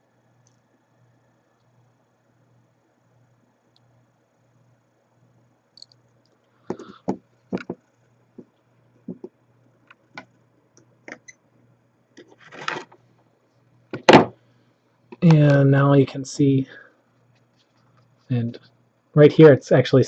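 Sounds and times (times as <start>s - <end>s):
faint low hum: 0.0s - 20.0s
clatter on workbench: 6.7s - 7.8s.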